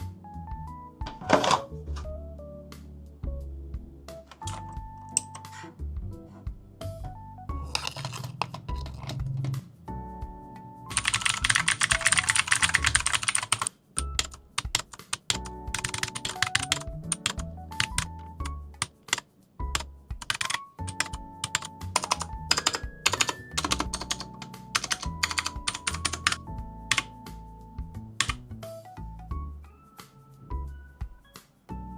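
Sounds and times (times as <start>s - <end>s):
mechanical keyboard clicks: 4.3s - 5.5s, 7.7s - 9.5s, 10.9s - 27.1s, 28.2s - 28.4s.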